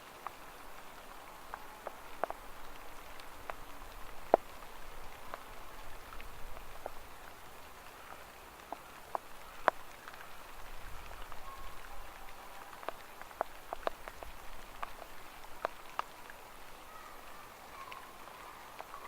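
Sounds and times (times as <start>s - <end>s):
light rain hiss: 0.0s - 19.0s
raindrops ticking: 0.0s - 19.0s.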